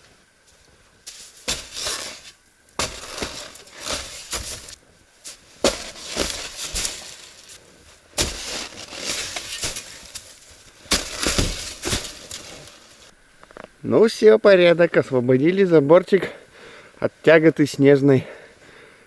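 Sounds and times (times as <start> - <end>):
shovel scraping frozen snow: 0.6 - 13.1.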